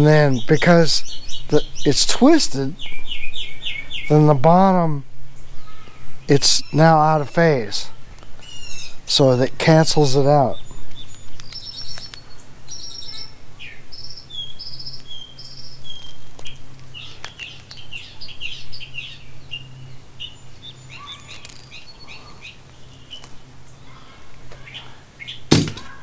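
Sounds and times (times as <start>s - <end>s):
birds chirping and singing: 0.0s - 26.0s
sharp knock: 25.5s - 26.0s.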